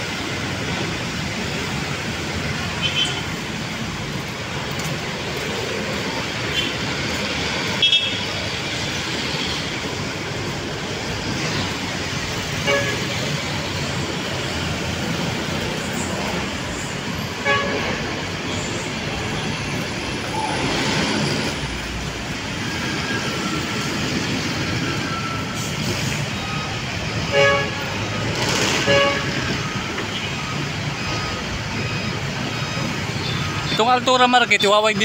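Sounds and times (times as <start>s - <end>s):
city road traffic: 0.0s - 35.0s
vehicle horn toots: 7.8s - 8.2s, 12.6s - 13.2s, 17.4s - 18.0s, 27.3s - 27.9s, 28.8s - 29.4s.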